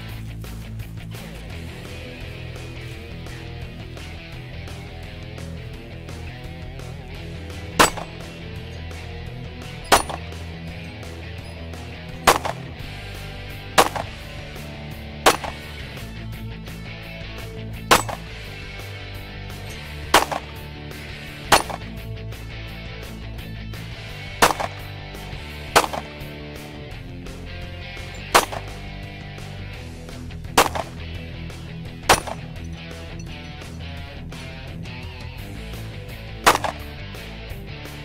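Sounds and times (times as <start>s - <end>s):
pistol shots: 7.7s - 8.5s, 9.8s - 16.1s, 17.8s - 18.6s, 19.5s - 22.0s, 24.2s - 26.4s, 28.2s - 28.9s, 30.5s - 31.2s, 32.0s - 32.6s, 36.4s - 37.0s.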